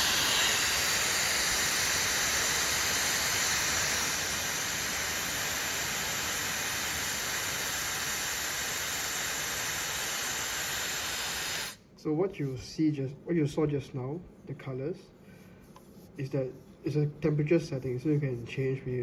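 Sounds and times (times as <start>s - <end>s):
hairdryer blowing air: 0.0s - 11.8s.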